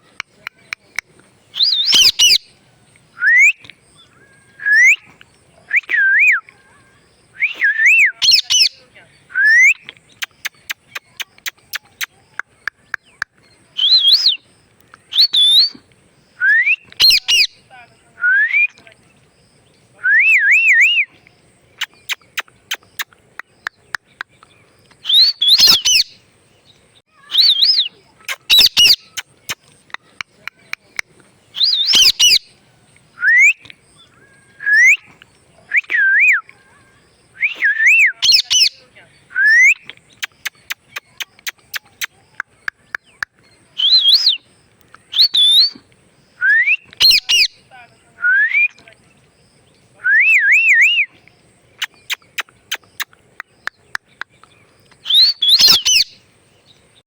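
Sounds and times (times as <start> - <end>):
parrot whistling and calling: 1.6 - 2.5, 3.2 - 3.6, 4.5 - 5.1, 7.4 - 12.1, 13.8 - 14.4, 15.1 - 15.7, 16.4 - 17.6, 20.0 - 21.1, 25.0 - 26.2, 27.2 - 29.6, 31.6 - 32.5, 33.2 - 33.6, 34.5 - 35.1, 35.7 - 36.5, 37.4 - 42.1, 43.8 - 44.4, 45.1 - 45.7, 46.4 - 47.6, 50.0 - 51.1, 55.0 - 56.2
parrot rapid clicks: 40.2 - 43.4.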